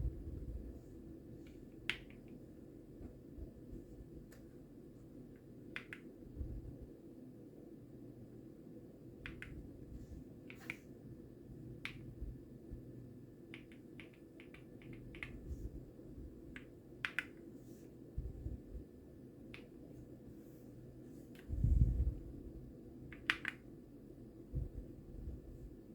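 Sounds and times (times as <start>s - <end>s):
faint low hum: 0.0s - 25.9s
mechanical keyboard key presses: 23.1s - 23.6s.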